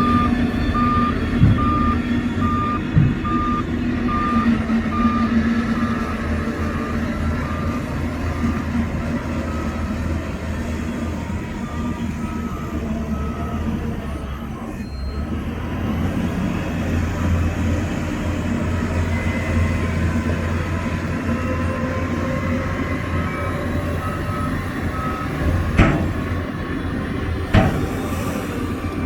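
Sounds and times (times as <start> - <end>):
bulldozer diesel engine running: 0.0 - 29.0
metallic squeaks of tracks: 23.2 - 29.0
sharp metal clanks: 25.8 - 26.4, 27.5 - 28.1.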